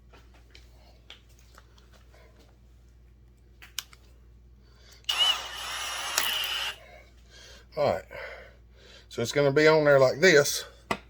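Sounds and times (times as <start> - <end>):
power drill running: 5.1 - 6.8.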